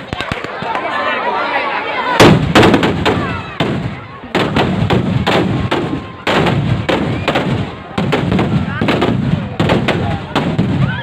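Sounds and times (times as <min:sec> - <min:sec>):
loud explosive booms: 0:02.2 - 0:11.0.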